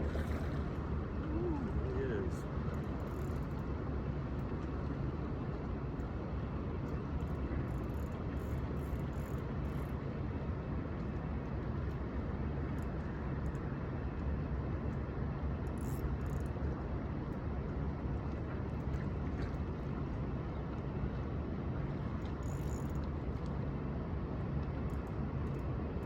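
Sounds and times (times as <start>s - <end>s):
low outdoor rumbling: 0.0s - 7.7s
faint ticks: 14.9s - 16.7s, 22.2s - 23.6s.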